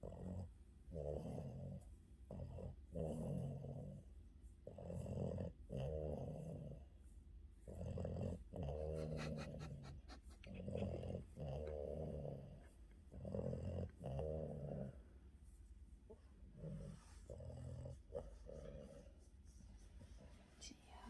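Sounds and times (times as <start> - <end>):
dog snoring: 4.6 - 6.9, 7.6 - 15.0, 16.6 - 19.2.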